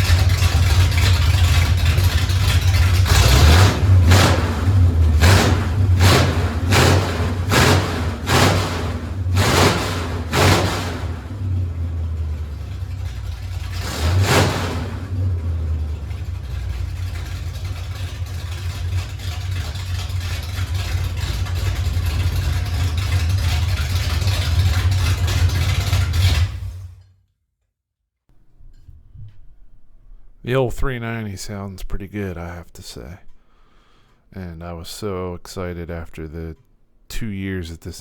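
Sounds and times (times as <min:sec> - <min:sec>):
engine running: 0:00.0 - 0:27.0.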